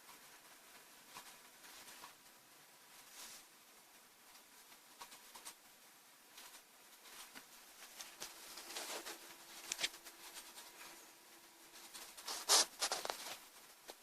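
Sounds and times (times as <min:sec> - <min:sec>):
light clicks and scrapes on laptop: 0:06.3 - 0:11.0, 0:11.7 - 0:14.0.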